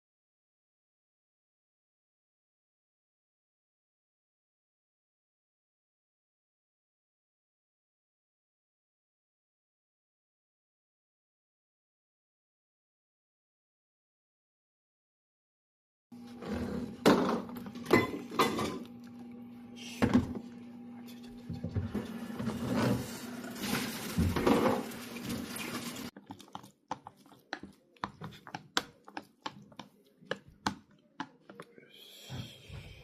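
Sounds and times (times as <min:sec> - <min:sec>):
plastic container and cutlery clattering: 0:21.8 - 0:26.1.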